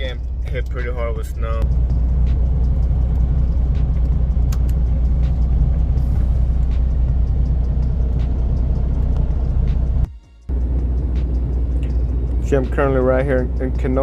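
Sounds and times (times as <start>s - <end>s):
diesel truck engine rumbling: 0.0s - 14.0s.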